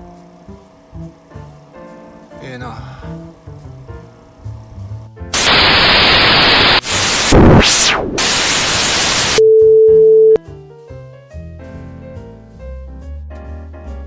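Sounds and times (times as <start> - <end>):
static white noise burst: 5.4 - 9.4
steady beep tone: 9.3 - 10.4.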